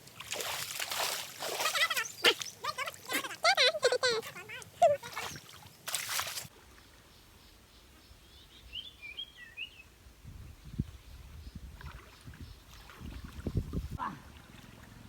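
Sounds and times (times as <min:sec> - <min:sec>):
bird chirping: 0:07.1 - 0:09.9.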